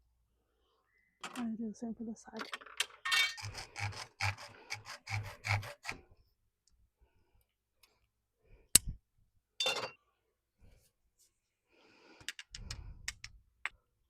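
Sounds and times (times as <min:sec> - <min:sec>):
hand saw rasping strokes: 0:03.4 - 0:06.1.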